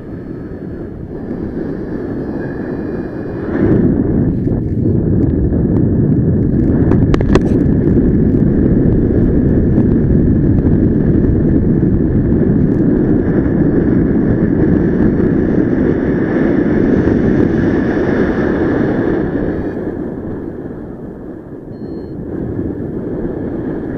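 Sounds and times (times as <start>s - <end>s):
wind roar on microphone: 0.0s - 23.9s
faint steady high tone: 21.7s - 22.2s.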